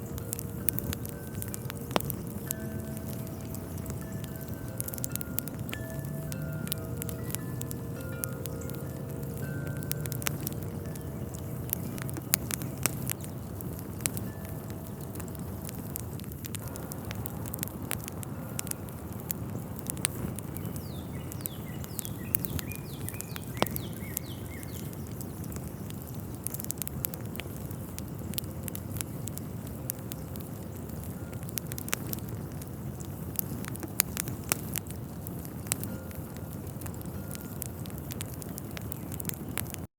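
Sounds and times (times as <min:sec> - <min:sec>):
faint chirps: 0:00.0 - 0:16.0, 0:16.6 - 0:32.6
low rumble: 0:00.0 - 0:20.5
sharp crackles and ticks: 0:00.0 - 0:39.9.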